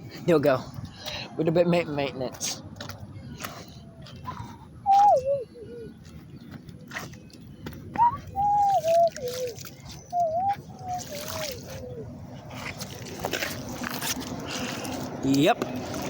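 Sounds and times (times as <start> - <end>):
person whistling: 4.3 - 5.9, 8.0 - 11.5.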